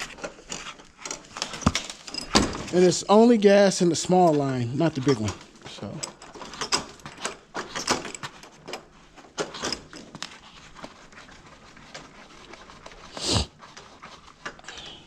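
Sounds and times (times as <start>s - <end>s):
hands handling metal pipe fittings: 0.0s - 2.8s, 4.2s - 10.9s.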